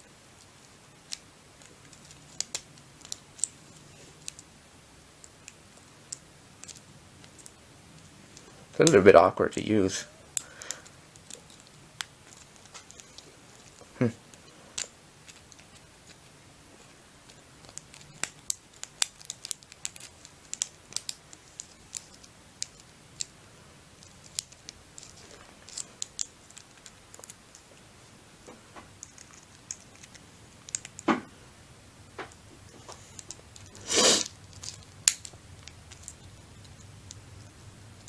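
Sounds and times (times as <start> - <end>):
lock pick clicking and scraping: 24.0 - 27.6
padlock rattling: 24.0 - 27.7.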